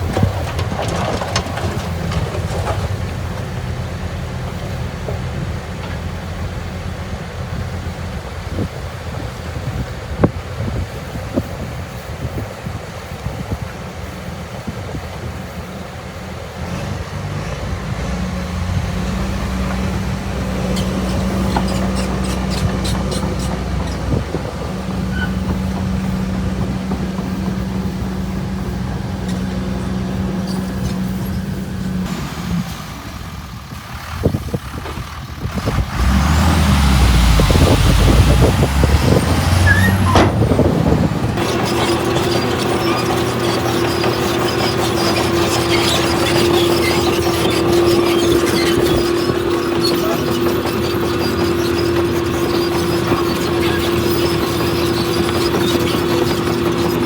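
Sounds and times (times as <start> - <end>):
diesel earthmoving machinery: 0.0 - 57.0
faint high squeals: 25.0 - 25.6, 39.6 - 40.4.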